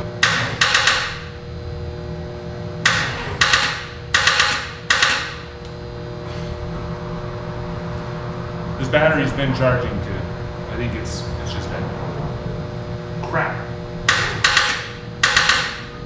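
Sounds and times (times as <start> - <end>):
engine starter bursts: 14.1 - 15.9.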